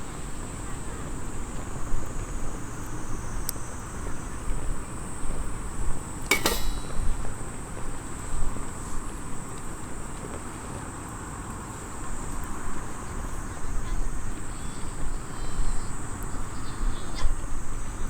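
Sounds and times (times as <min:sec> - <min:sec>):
sharp metallic clink: 0:06.3 - 0:07.4.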